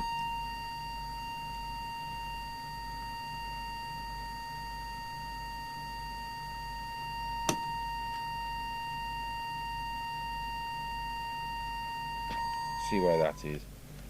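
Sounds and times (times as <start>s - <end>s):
steady test tone: 0.0s - 13.7s
low electrical hum: 0.0s - 14.0s
sharp click: 7.4s - 7.7s.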